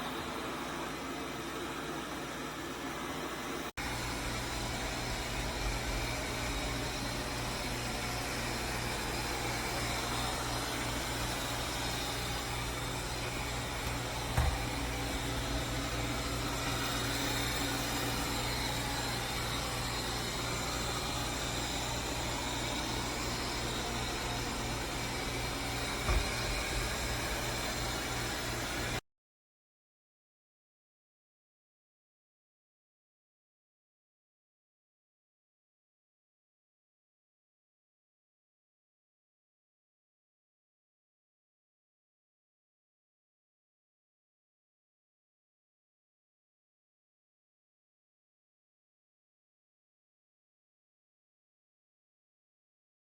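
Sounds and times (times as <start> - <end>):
robot vacuum whirring: 3.8 - 29.0.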